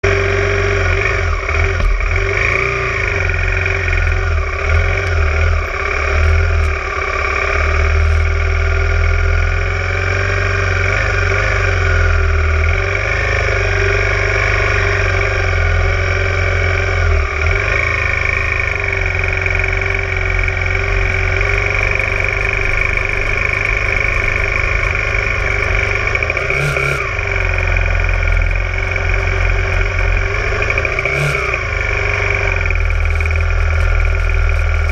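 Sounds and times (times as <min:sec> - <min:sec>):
motorcycle engine running: 0:00.0 - 0:34.9.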